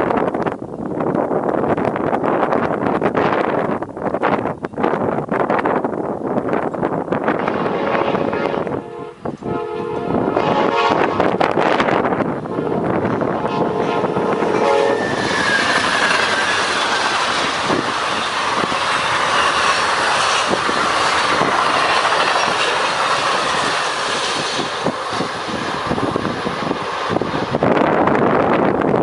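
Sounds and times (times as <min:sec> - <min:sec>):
train horn: 0:07.4 - 0:11.5, 0:12.5 - 0:16.6
train wheels clacking over rail joints: 0:14.4 - 0:28.2.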